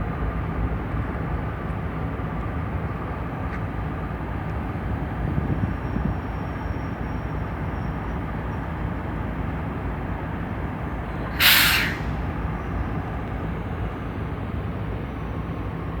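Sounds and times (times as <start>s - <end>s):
diesel locomotive engine rumbling: 0.0s - 16.0s
compressed air hiss: 11.3s - 12.3s.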